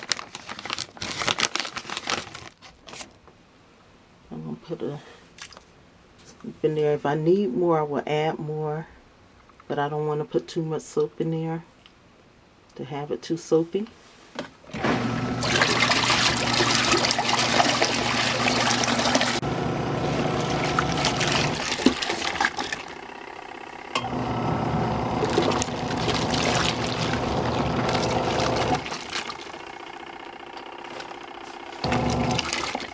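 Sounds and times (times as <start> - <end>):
washing machine motor hum: 14.7 - 32.9
water churning: 14.8 - 29.8, 31.8 - 32.9.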